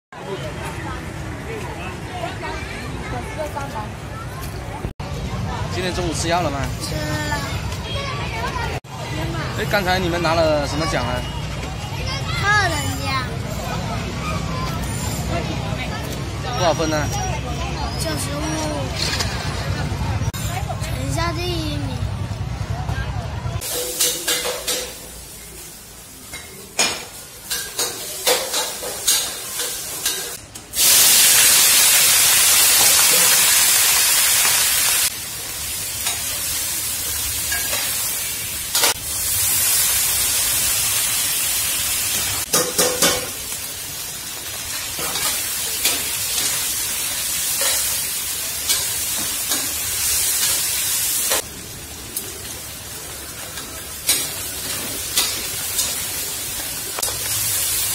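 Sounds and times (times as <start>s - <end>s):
food sizzling in hot oil: 23.6s - 57.9s.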